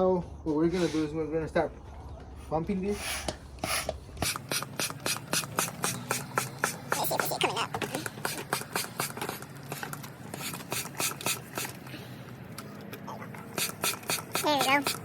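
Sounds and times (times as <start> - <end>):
hand pump hissing strokes: 2.9 - 12.2, 13.4 - 15.0.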